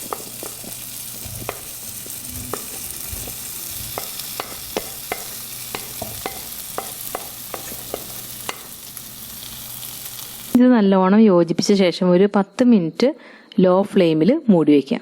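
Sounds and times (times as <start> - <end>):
spoon knocking against pan: 0.0 - 8.9
food sizzling in a pan: 0.0 - 10.6.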